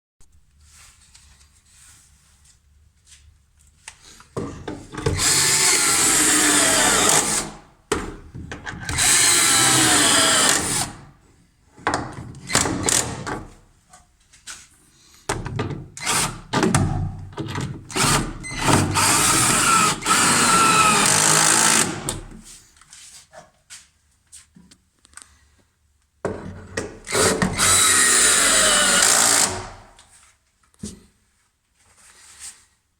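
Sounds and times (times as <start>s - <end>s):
power drill running: 5.1s - 7.6s, 8.9s - 11.0s, 16.0s - 16.5s, 17.9s - 22.3s, 27.1s - 29.9s.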